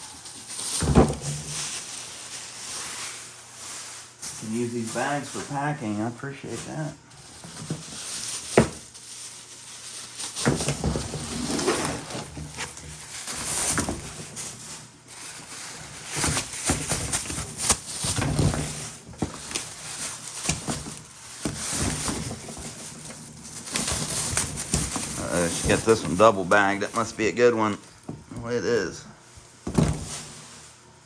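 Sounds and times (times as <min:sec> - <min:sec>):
plastic bags crinkling: 0:00.0 - 0:05.8, 0:07.1 - 0:28.1.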